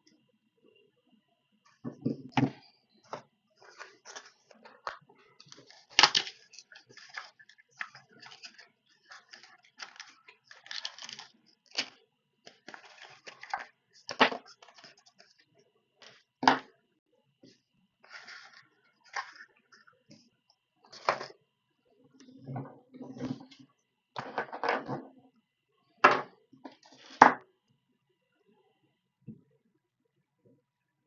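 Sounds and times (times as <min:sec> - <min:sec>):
hands handling small parts and tools: 0:01.8 - 0:15.4, 0:18.0 - 0:20.2.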